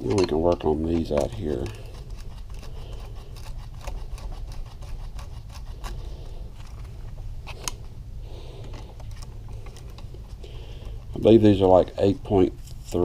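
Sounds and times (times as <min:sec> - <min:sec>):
hand tools clicking and scraping: 0:00.0 - 0:07.8
steady low hum: 0:00.0 - 0:13.0.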